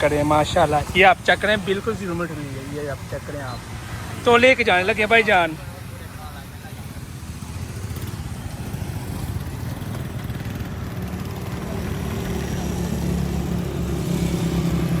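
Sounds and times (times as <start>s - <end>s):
small engine puttering: 0.0s - 15.0s.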